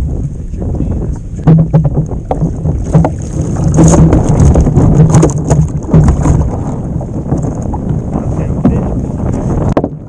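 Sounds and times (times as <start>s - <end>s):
wind buffeting microphone: 0.0s - 10.0s
handling knocks and clicks on kayak: 1.4s - 8.0s, 8.6s - 10.0s.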